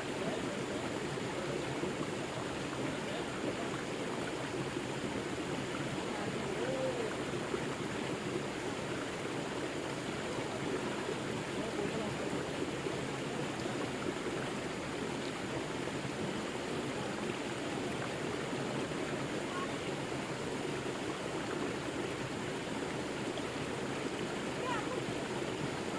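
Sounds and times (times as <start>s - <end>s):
stream water rushing: 0.0s - 25.9s.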